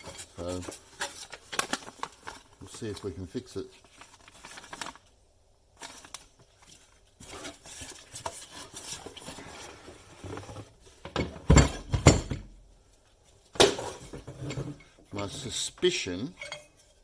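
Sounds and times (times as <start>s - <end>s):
hard parts clinking and rattling: 10.3s - 12.7s, 13.6s - 17.0s.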